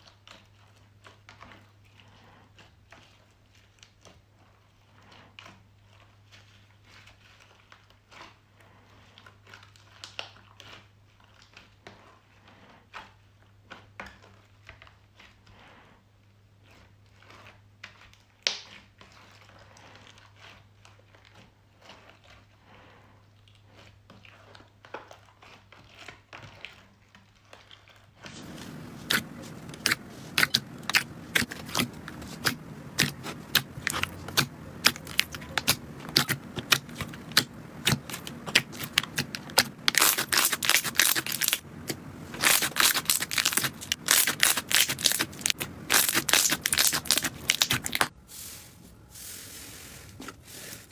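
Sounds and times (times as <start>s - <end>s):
slime crackling and popping: 28.3s - 48.1s.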